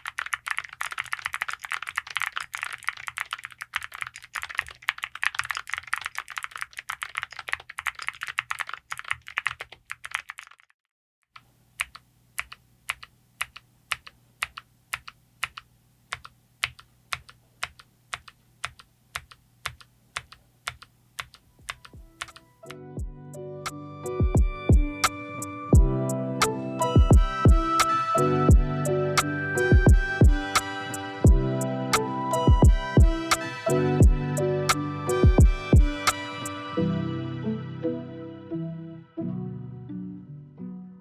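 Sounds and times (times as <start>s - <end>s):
mechanical keyboard typing: 0.0s - 10.7s, 11.4s - 22.8s
music: 21.9s - 41.0s.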